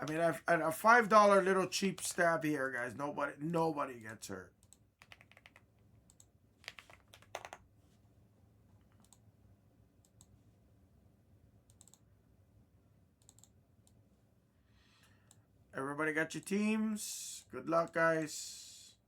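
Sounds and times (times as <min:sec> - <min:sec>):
low room hum: 0:00.0 - 0:19.0
keyboard keystrokes: 0:04.6 - 0:07.6.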